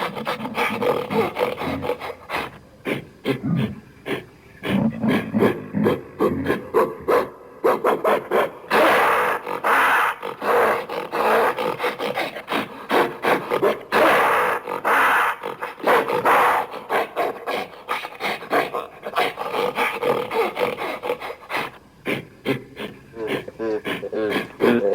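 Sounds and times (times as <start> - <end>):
creature calls: 0.0 - 6.6
harsh animal calls: 0.0 - 6.9, 8.2 - 24.9.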